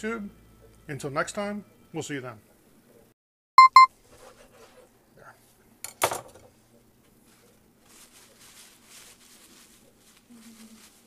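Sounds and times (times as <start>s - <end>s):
faint rustling: 7.2s - 11.0s.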